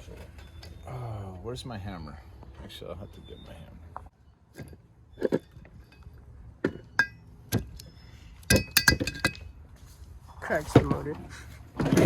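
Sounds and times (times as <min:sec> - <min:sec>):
metal tools clinking: 0:08.5 - 0:09.5.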